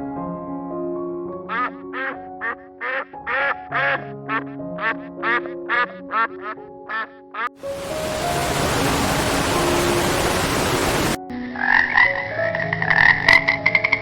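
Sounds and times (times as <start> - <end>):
soft piano music: 0.0 - 14.0
duck quacking: 1.5 - 7.6.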